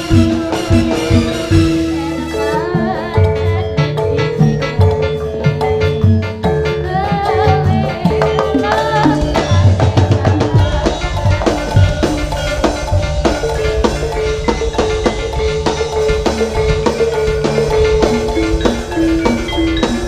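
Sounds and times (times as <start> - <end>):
fast dense drumming: 0.0 - 20.0
gamelan percussion: 0.0 - 20.0
wavering melody line: 0.0 - 20.0
steady held pitched tone: 7.6 - 20.0.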